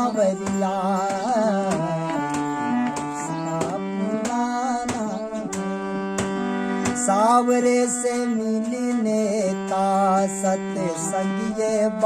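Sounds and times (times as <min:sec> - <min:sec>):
tabla strokes: 0:00.3 - 0:07.1.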